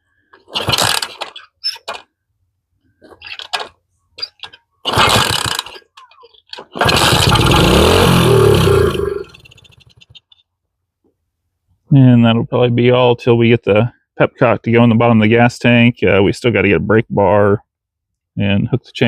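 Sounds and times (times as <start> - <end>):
small engine being kick-started: 0.4 - 2.0, 4.8 - 10.2
engine running and revving: 6.8 - 9.4.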